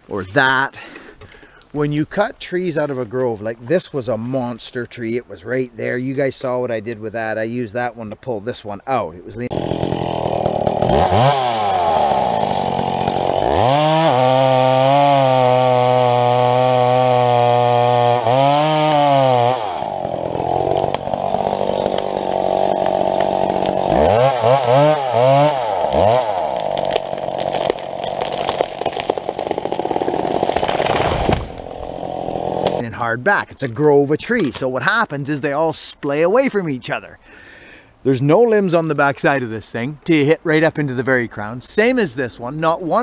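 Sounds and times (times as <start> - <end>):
chainsaw revving: 9.5 - 32.8.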